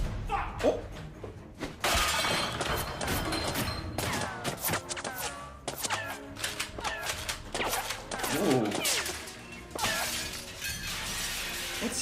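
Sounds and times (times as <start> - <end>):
loud shattering crash: 9.1 - 12.0.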